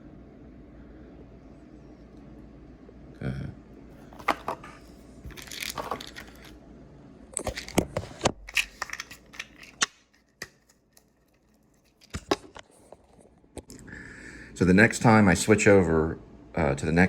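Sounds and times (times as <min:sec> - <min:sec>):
tablet packaging crinkling: 0:05.3 - 0:06.6, 0:07.4 - 0:12.8.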